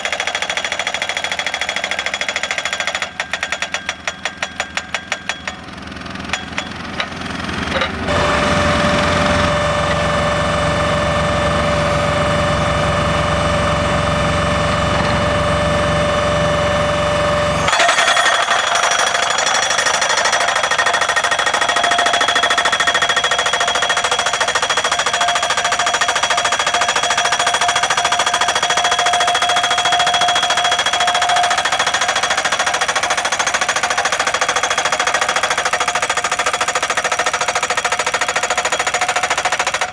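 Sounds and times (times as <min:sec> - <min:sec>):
pile driver hammering: 0:00.0 - 0:08.1, 0:17.6 - 0:39.9.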